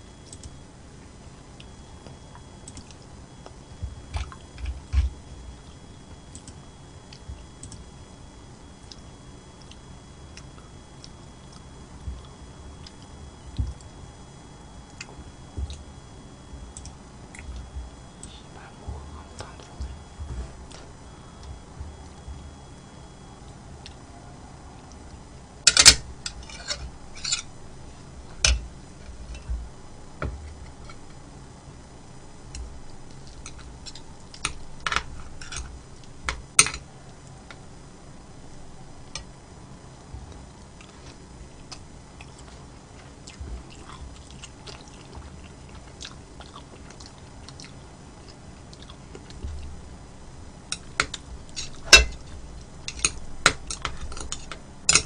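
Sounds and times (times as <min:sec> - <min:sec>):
soft chewing: 0:08.7 - 0:25.2, 0:40.0 - 0:49.8
utensils clicking on a bowl: 0:52.9 - 0:55.0.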